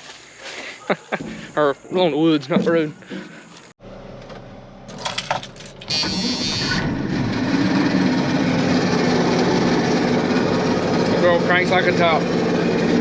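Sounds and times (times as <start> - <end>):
combine engine starting and running: 3.8 - 13.0.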